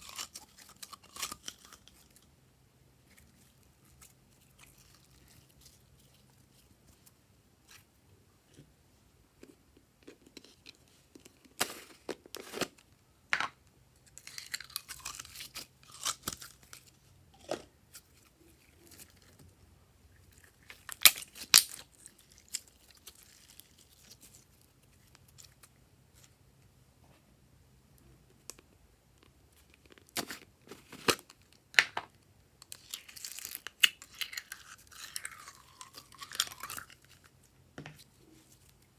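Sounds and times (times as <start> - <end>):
slime crackling and popping: 20.4 - 24.4, 32.6 - 37.3.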